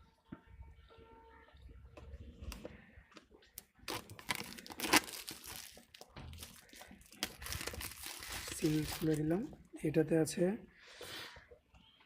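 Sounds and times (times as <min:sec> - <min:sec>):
packaging crinkling: 0:03.6 - 0:09.4
box seal tearing: 0:03.9 - 0:05.8.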